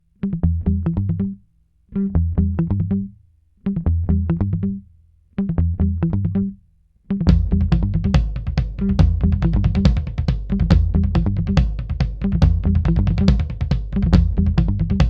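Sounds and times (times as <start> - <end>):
plucked bass riff: 0.2 - 15.0
full band with drums: 7.3 - 15.0.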